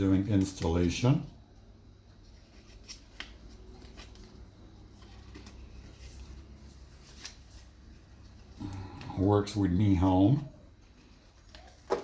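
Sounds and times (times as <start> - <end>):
packaging rustling: 2.4 - 8.5.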